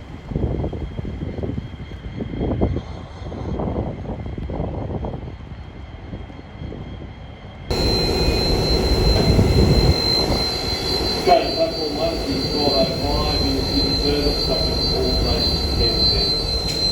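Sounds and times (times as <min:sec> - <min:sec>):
diesel railcar rumbling: 0:07.7 - 0:16.9
steady high whine: 0:07.7 - 0:16.9.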